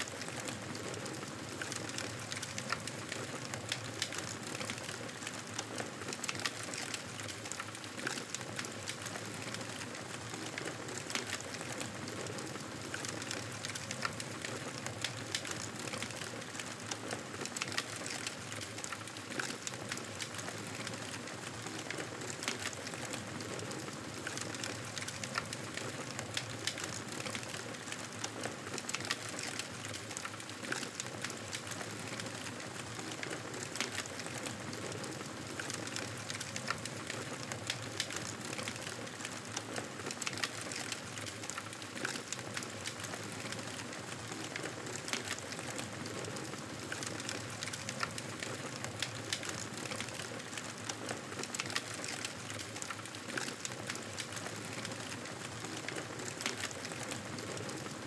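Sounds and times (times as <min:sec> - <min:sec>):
campfire crackling: 0:40.2 - 0:57.3.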